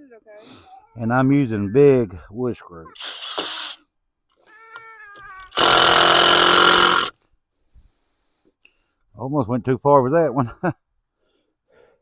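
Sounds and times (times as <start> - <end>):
power drill driving screw into wood: 3.0 - 3.8, 5.5 - 7.2.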